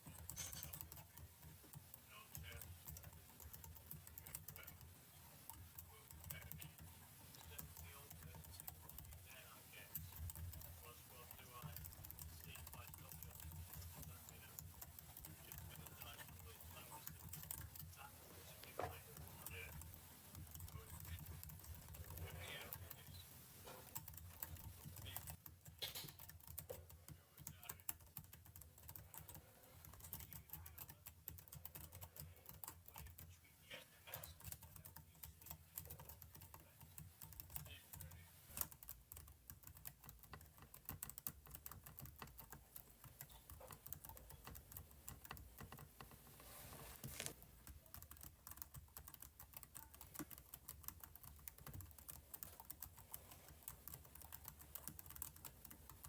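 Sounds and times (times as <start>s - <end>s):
keyboard typing clicks: 0.0s - 33.3s, 34.1s - 56.0s.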